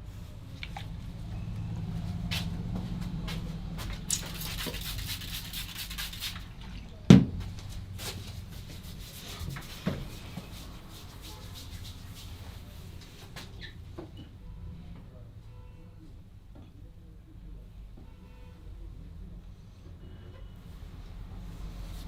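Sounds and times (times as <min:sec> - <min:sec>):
hands rubbing scalp and hair: 0:04.2 - 0:06.5, 0:08.0 - 0:12.7.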